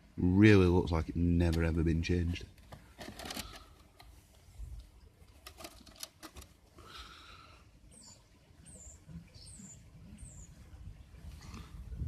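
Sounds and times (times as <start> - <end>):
small bird chirping: 7.9 - 10.6.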